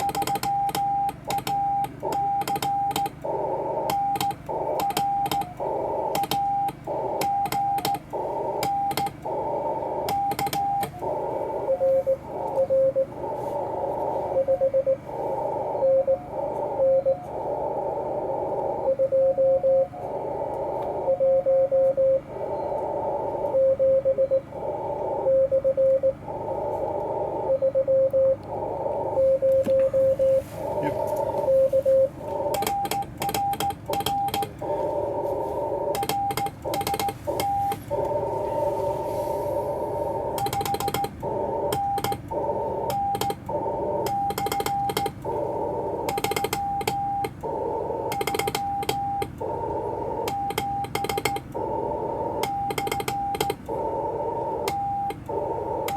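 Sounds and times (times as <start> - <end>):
sharp clicks: 0.0 - 11.8, 30.8 - 38.3, 40.2 - 55.9
morse code tones: 0.0 - 55.9
radio band noise hiss: 1.1 - 55.9.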